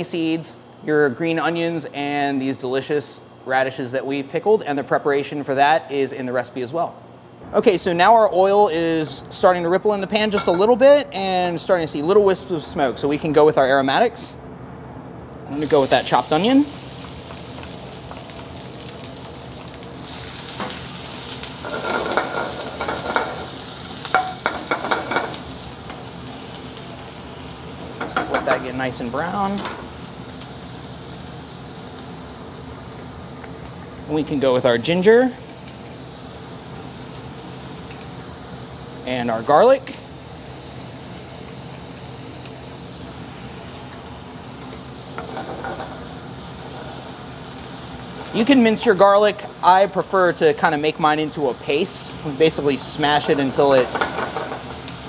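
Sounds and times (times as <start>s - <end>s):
onion sizzling in oil: 15.5s - 55.0s.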